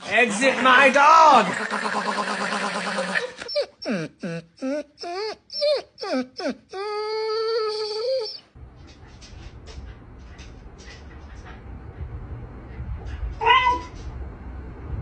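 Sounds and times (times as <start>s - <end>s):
dog whining cries: 3.0s - 8.5s, 13.4s - 14.0s
faint low rumble: 8.6s - 15.0s
dog howling: 13.4s - 14.0s.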